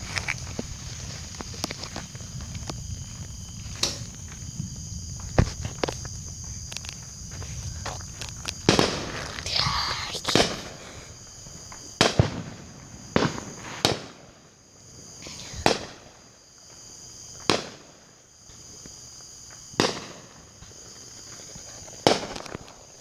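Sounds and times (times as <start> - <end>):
high-pitched insects droning: 0.0 - 23.0
fireworks bangs: 8.6 - 14.4, 19.8 - 20.4.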